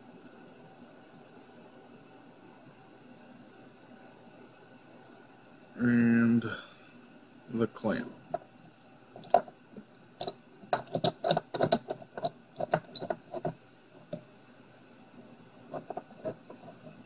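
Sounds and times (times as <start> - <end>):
steel clamp clicking and rattling: 10.2 - 13.6.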